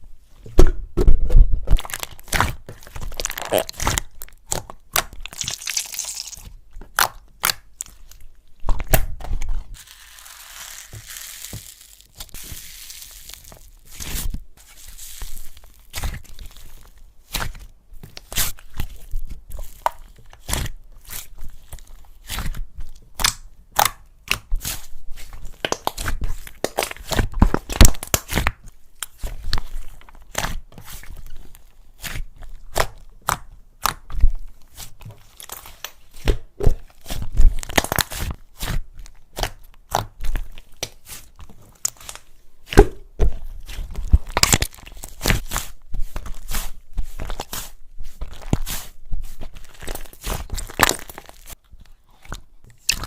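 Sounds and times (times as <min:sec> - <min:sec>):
slime sticky pops and crackles: 0:23.2 - 0:24.7, 0:25.6 - 0:29.2, 0:37.5 - 0:38.8, 0:44.0 - 0:45.5.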